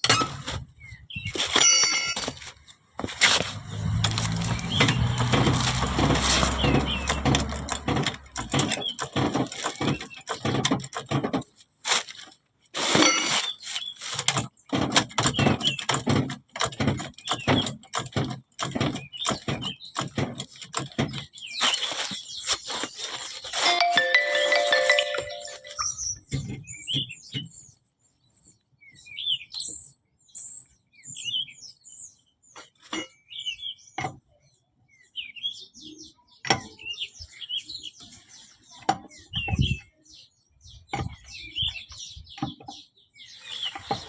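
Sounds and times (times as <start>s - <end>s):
tools and metal parts clanking: 0.0s - 0.7s, 1.3s - 22.2s.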